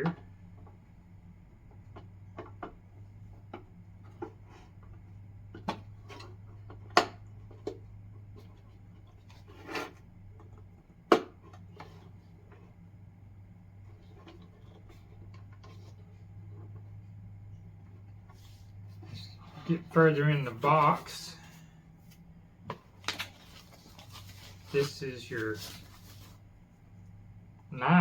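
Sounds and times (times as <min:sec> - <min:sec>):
steady low hum: 0:00.0 - 0:28.0
packaging rustle: 0:22.9 - 0:26.4.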